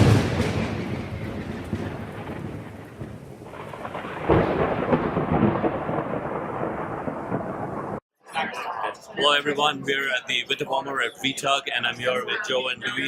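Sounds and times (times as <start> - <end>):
rain: 0.0 - 8.0
rolling thunder: 0.0 - 8.0.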